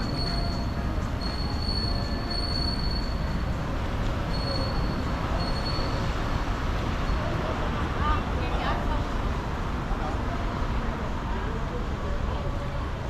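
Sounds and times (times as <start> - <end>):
train squealing: 0.0 - 7.4
low rumble of rail traffic: 0.0 - 13.0.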